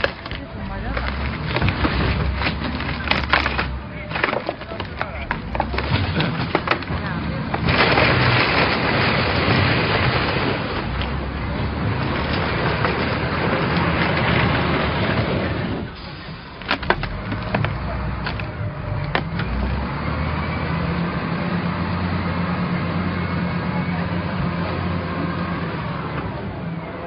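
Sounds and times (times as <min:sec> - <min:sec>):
sharp cracks and knocks: 0:00.0 - 0:11.2, 0:16.5 - 0:19.7
loader engine under load: 0:00.0 - 0:27.0.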